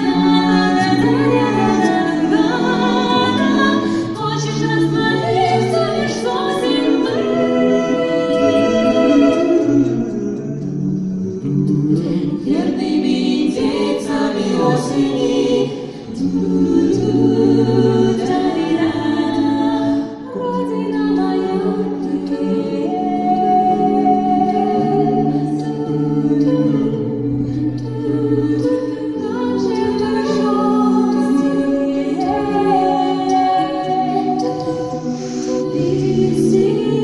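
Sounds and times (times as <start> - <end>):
vocal ensemble singing in harmony: 0.0 - 37.0.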